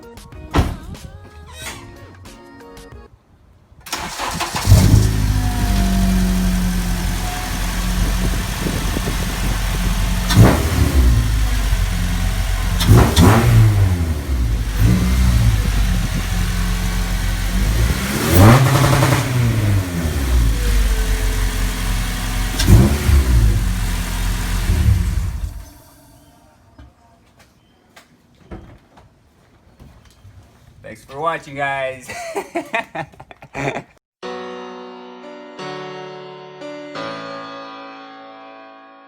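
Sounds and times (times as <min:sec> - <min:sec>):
car engine idling and revving: 0:03.9 - 0:26.2.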